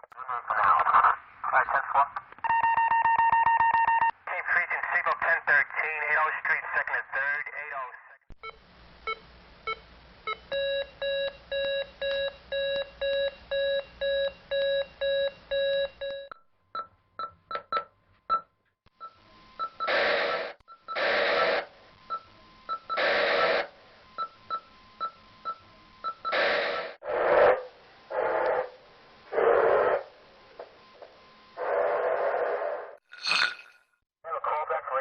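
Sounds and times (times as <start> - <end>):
radio static bursts: 4.3 - 7.7.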